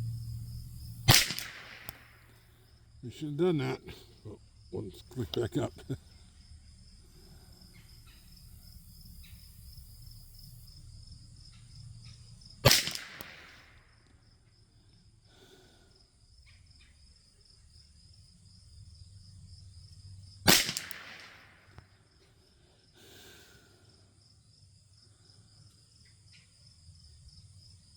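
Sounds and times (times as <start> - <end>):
crickets chirping: 0.0 - 27.9
rifle shots with echo: 1.1 - 2.3, 12.6 - 13.9, 20.5 - 21.8.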